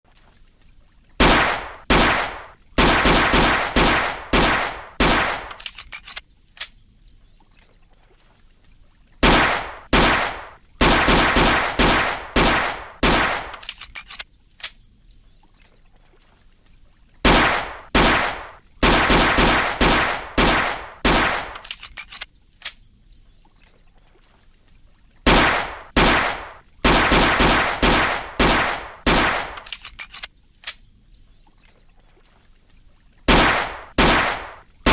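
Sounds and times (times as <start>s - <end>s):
faint bird chirps: 6.0s - 8.3s, 14.0s - 16.3s, 22.0s - 24.4s, 30.1s - 32.4s
pistol shots with echo: 9.2s - 13.5s, 25.3s - 29.6s.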